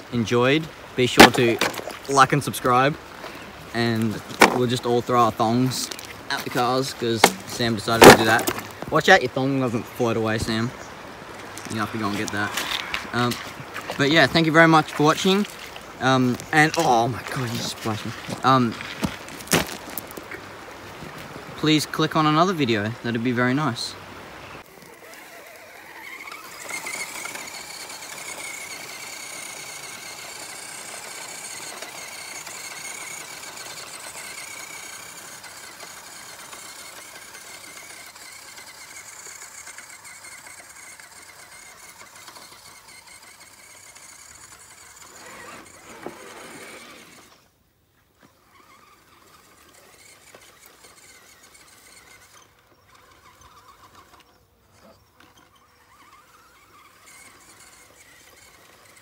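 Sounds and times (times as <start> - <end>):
electric motor whining: 24.6 - 47.5, 48.2 - 59.0.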